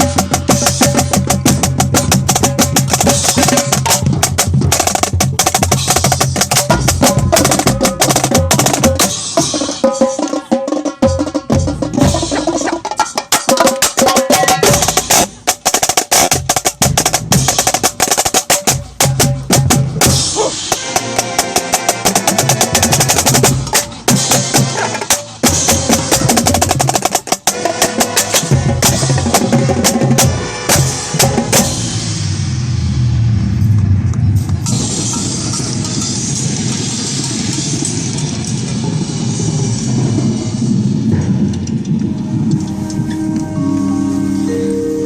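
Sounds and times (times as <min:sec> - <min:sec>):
snare drum rolls: 0:00.0 - 0:31.8
sustained horn chords: 0:42.1 - 0:45.0.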